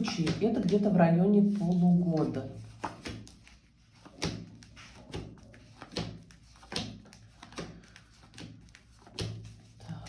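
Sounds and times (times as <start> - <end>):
cards tapping on a table: 0.0 - 0.5, 2.2 - 9.6.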